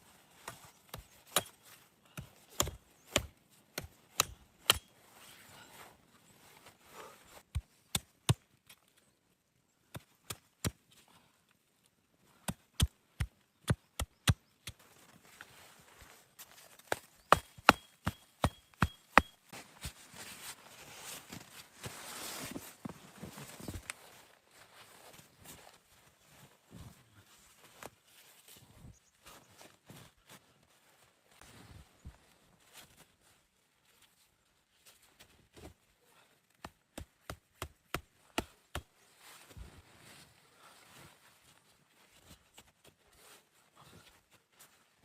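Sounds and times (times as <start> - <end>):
axe chopping wood: 0.9 - 1.6, 2.2 - 4.9, 16.9 - 19.4.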